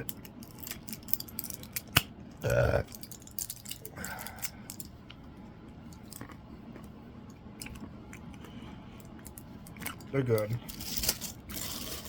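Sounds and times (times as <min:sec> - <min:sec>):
person chewing candy: 0:00.0 - 0:04.9, 0:05.9 - 0:06.9.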